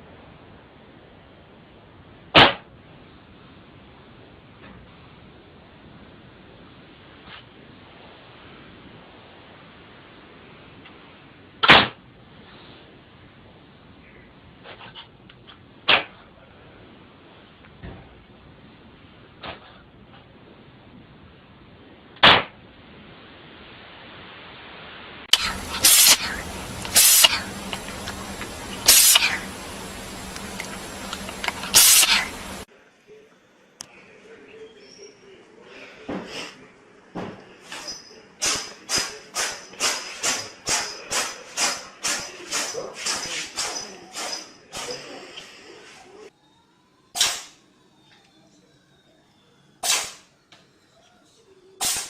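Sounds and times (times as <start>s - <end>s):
cat sneezing: 25.3s - 28.2s, 28.8s - 29.6s, 37.7s - 45.4s, 47.2s - 47.5s, 49.8s - 50.2s, 51.8s - 52.0s.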